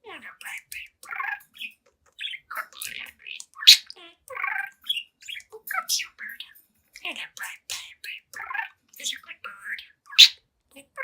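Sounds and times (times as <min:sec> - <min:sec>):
budgie chattering: 0:02.2 - 0:04.7, 0:10.1 - 0:10.4.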